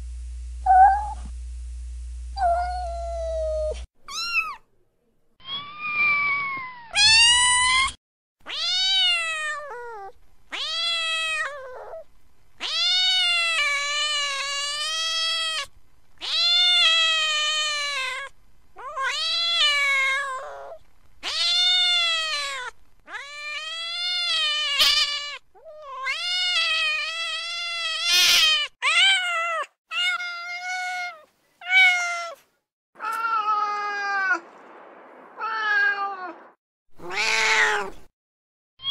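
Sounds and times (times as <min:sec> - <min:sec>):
cat meowing: 0:02.4 - 0:04.6, 0:08.5 - 0:12.0, 0:12.6 - 0:32.4, 0:33.0 - 0:34.4, 0:37.0 - 0:38.0.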